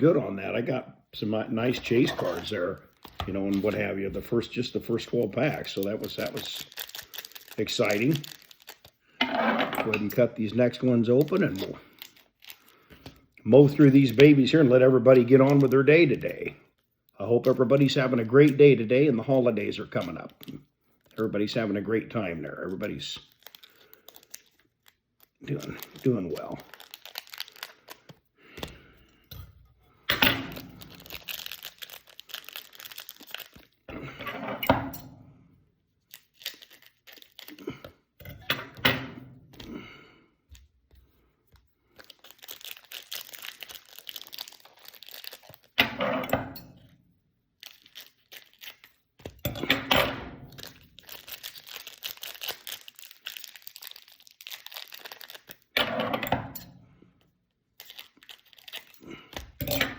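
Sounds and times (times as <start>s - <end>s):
card wrappers tearing and crinkling: 1.6s - 9.2s, 9.9s - 16.5s, 21.0s - 28.9s, 30.5s - 34.2s, 36.0s - 37.8s, 41.6s - 45.8s, 47.6s - 49.7s, 50.4s - 55.8s, 57.7s - 59.9s.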